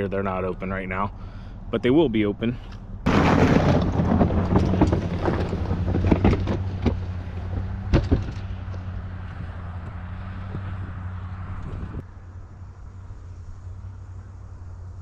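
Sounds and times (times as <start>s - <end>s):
vehicle engine running: 0.0s - 15.0s
sharp knocks and clunks: 3.1s - 10.9s.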